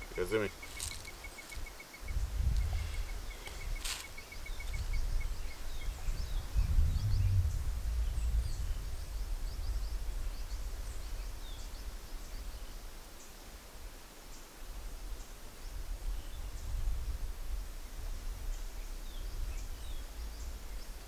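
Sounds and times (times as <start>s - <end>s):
insect trill: 0.0s - 7.2s
low microphone rumble: 0.0s - 12.7s
faint bird chirps: 0.0s - 12.8s.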